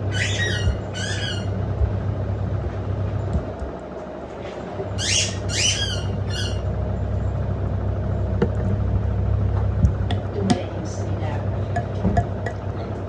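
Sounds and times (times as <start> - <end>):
high rising squawks: 0.0 - 1.6, 5.0 - 6.6
washing machine humming: 0.0 - 13.0.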